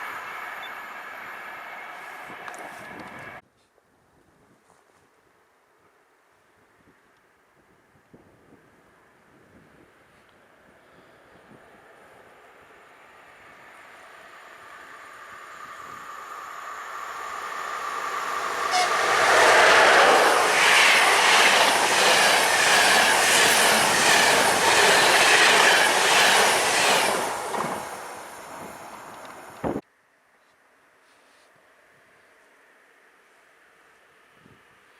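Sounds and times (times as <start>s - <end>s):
train passing at speed: 0.0s - 3.4s, 10.0s - 29.6s
clickety-clack of train wheels: 18.7s - 28.0s.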